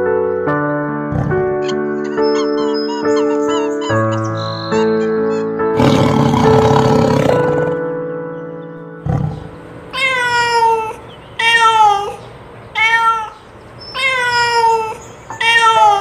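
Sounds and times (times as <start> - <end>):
cat meowing: 1.6 - 5.7, 9.9 - 12.2, 12.8 - 16.0.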